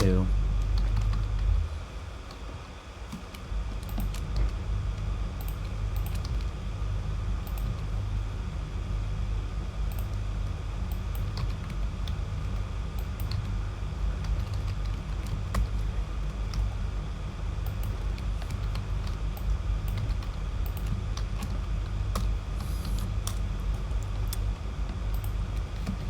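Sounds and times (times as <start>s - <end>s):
steady low hum: 0.0s - 26.0s
computer keyboard keystrokes: 0.6s - 1.5s, 3.1s - 4.6s, 5.4s - 6.5s, 7.4s - 7.9s, 10.9s - 13.6s, 14.2s - 16.8s, 17.6s - 26.0s.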